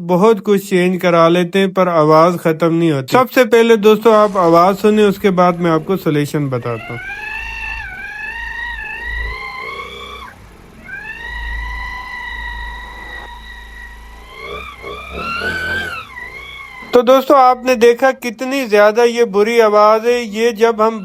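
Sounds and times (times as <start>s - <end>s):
high-pitched gear whine: 3.8s - 21.0s
motorcycle engine running: 4.1s - 18.7s.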